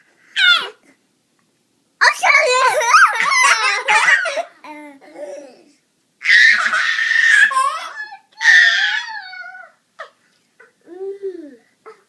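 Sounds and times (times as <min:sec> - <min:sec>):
toddler laughing: 0:02.5 - 0:05.6, 0:06.4 - 0:10.8
toddler voice sounds: 0:10.6 - 0:12.0.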